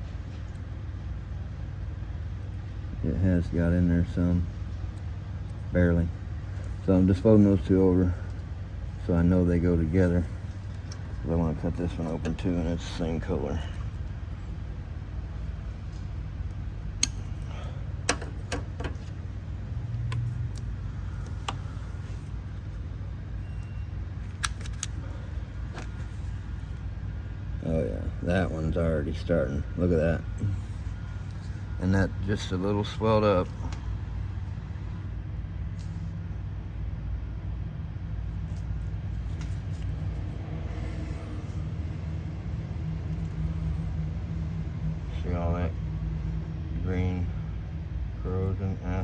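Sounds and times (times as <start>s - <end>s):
steady low hum: 0.0s - 49.0s
hand tools clicking and snipping: 17.0s - 17.4s.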